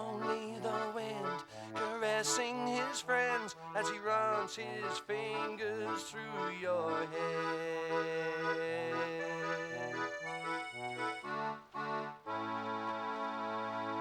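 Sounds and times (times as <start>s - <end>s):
concertina playing chords: 8.1s - 14.0s.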